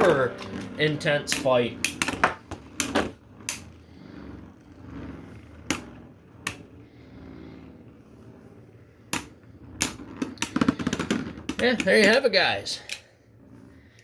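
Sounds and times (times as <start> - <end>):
spinning tops clacking: 0.0 - 3.8, 5.5 - 6.8, 9.1 - 13.0
spinning tops whirring: 0.0 - 14.0.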